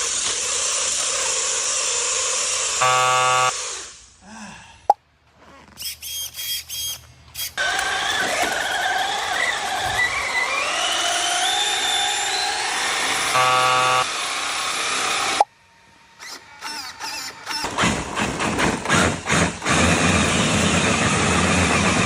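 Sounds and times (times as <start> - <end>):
electric motor high whine: 0.0 - 4.1, 7.6 - 17.6
short buzzy horn tone: 2.8 - 3.6, 13.3 - 14.1.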